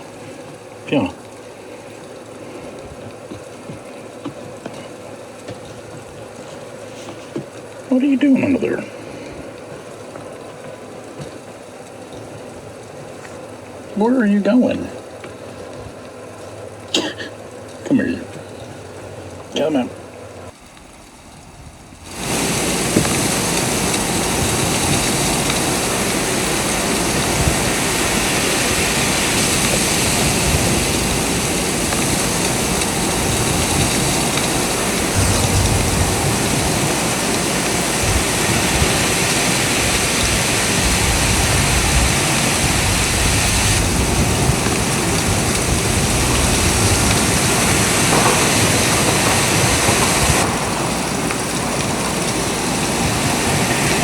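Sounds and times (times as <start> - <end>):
strong blizzard wind: 20.0 - 54.0.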